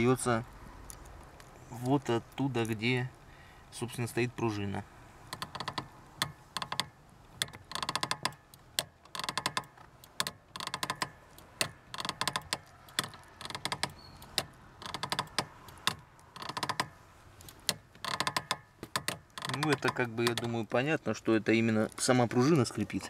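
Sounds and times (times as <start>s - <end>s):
pedal click: 5.3s - 20.7s
pedal spring grating squeak: 11.9s - 15.5s.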